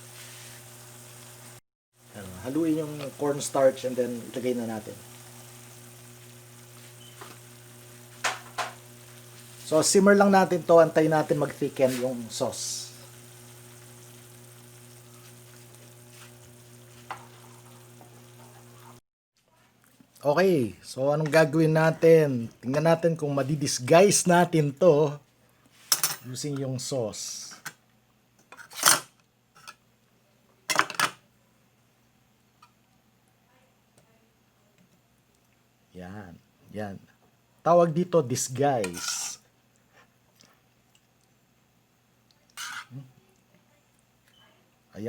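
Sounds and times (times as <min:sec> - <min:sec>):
sauce sizzling and bubbling: 0:00.0 - 0:19.0.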